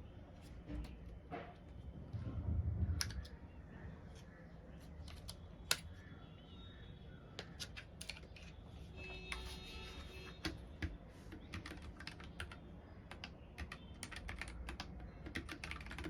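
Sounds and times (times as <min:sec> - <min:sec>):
low handling rumble: 0:01.8 - 0:04.2
keyboard clicks and taps: 0:10.4 - 0:16.0.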